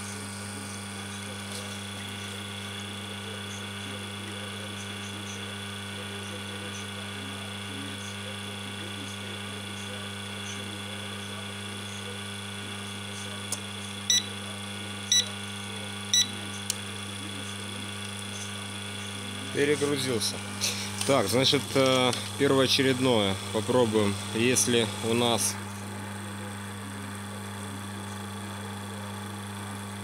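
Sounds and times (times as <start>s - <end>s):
short beeps: 14.1s - 14.3s, 16.1s - 16.4s.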